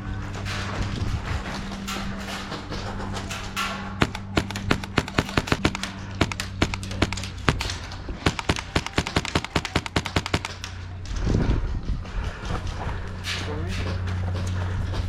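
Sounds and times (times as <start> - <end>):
low rumble: 0.0 - 15.0
airsoft guns firing: 4.0 - 11.0.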